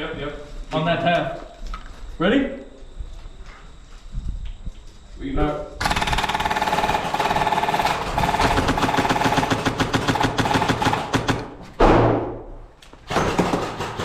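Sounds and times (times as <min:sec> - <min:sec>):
airsoft rifle full-auto bursts: 0:05.8 - 0:11.6
loud thump: 0:11.8 - 0:12.5.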